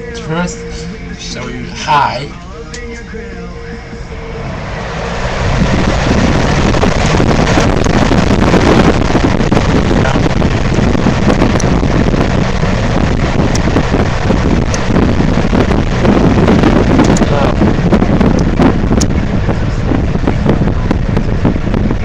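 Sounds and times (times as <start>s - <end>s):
box fan wind noise: 0.0s - 22.0s.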